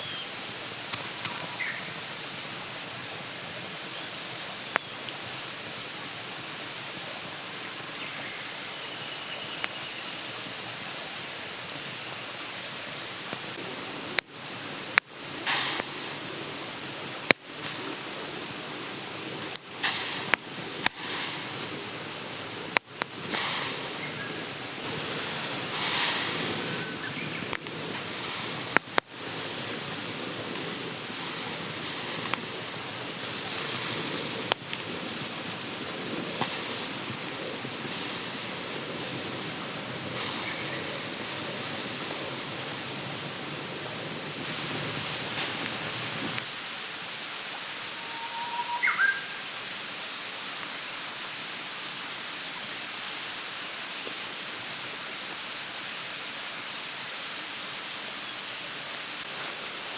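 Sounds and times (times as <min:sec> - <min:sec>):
campfire crackling and popping: 0:00.0 - 0:08.8, 0:09.5 - 0:46.6
steady rushing hiss: 0:00.0 - 0:59.9
short rising whistle: 0:47.8 - 0:49.4.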